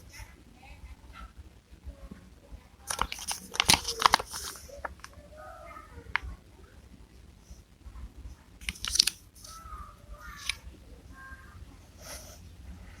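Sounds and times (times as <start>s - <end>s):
paper packaging crinkling: 2.8s - 5.2s, 8.6s - 9.6s
sharp clicks: 8.6s - 9.6s, 10.3s - 10.7s.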